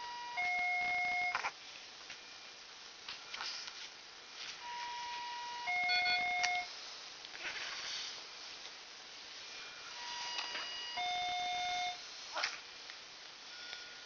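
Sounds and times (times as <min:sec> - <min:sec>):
electronic two-note beep: 0:04.7 - 0:06.7.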